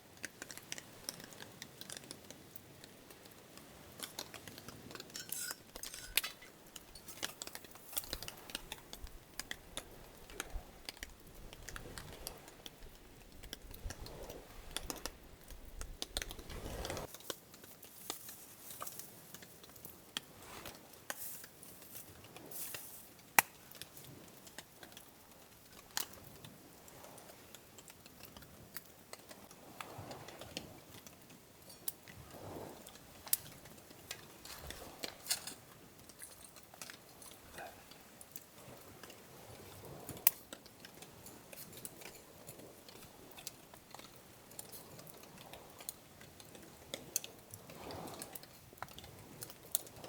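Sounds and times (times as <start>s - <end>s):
utensils and cookware clicking: 5.0s - 7.6s
wind rumble on microphone: 8.0s - 17.1s.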